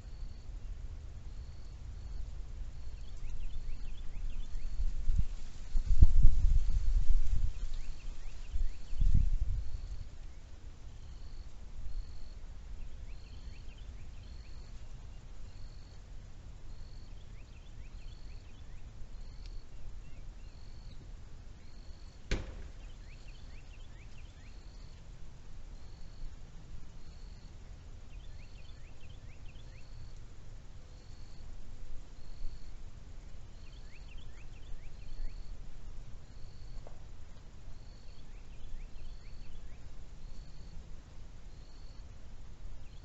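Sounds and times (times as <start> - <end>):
wind rumble on microphone: 0.0 - 11.0
sharp click: 22.3 - 23.0.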